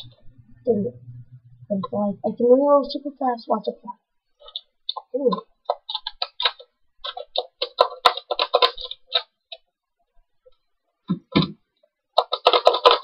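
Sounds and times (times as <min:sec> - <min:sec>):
toy blaster plastic clicks and rattles: 0:12.2 - 0:13.0.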